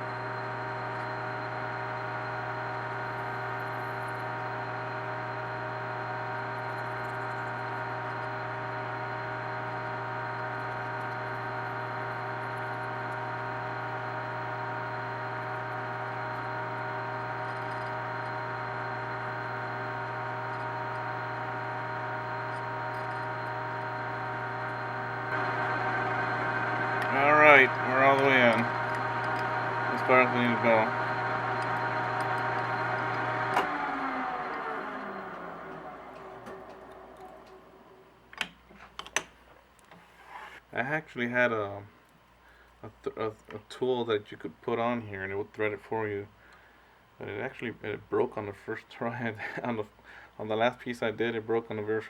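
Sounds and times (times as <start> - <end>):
metal lathe humming and whining: 0.0 - 37.9.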